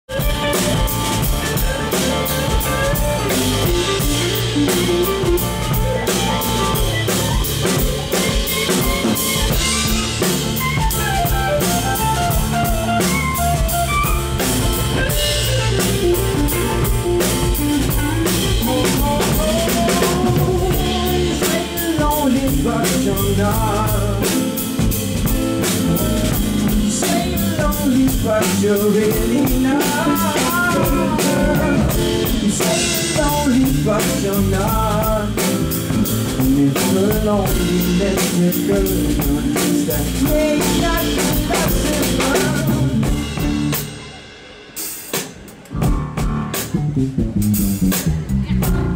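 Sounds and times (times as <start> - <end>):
bass: 0.0 - 48.9
drum kit beat with rimshots: 0.0 - 48.9
melodic lead line: 0.1 - 44.4
guitar: 0.1 - 48.9.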